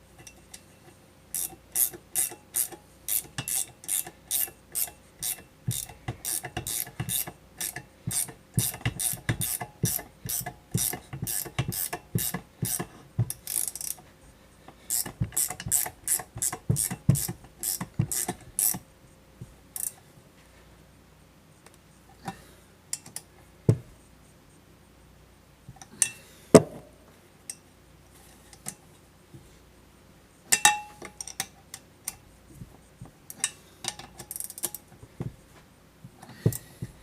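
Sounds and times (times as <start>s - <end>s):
ratchet wrench clicking: 1.3s - 14.0s, 14.9s - 18.8s, 19.8s - 20.0s, 34.2s - 34.8s.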